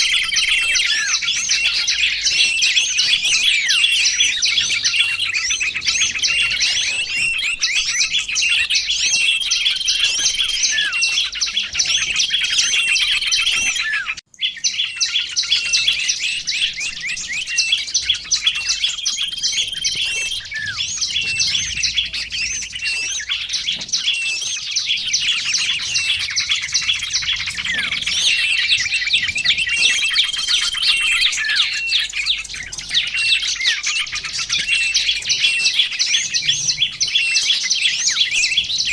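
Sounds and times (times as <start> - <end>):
songbirds chirping and trilling: 0.0 - 38.9.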